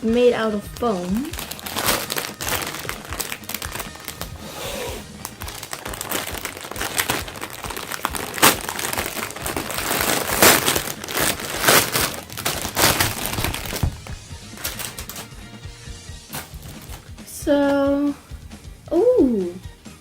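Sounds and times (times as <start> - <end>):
plastic packaging crinkling: 1.4 - 4.3, 5.3 - 15.3.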